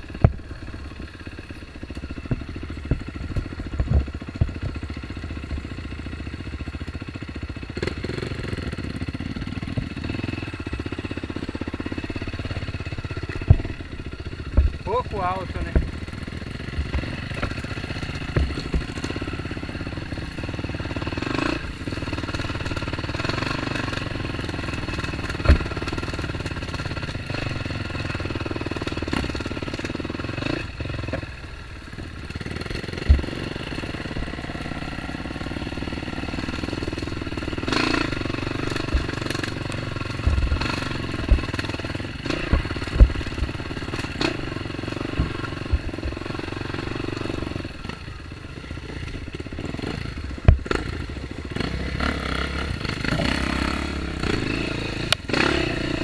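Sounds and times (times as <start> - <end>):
clatter: 0.0 - 31.3, 32.0 - 48.0, 48.8 - 56.0
dirt bike engine revving: 0.0 - 56.0
short thumps: 14.5 - 16.2, 33.0 - 33.4, 40.2 - 41.5, 42.4 - 44.3.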